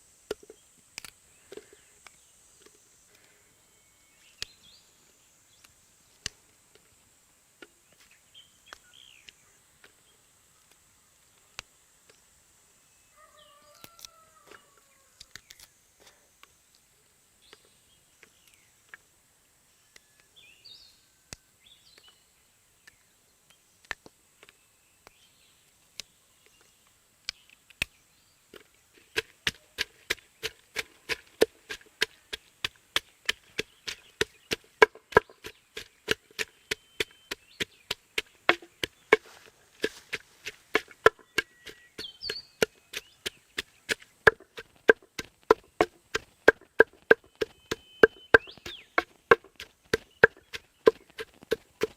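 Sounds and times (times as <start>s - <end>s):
bird chirps: 29.0s - 51.9s
knife chopping on wooden board: 33.0s - 51.9s.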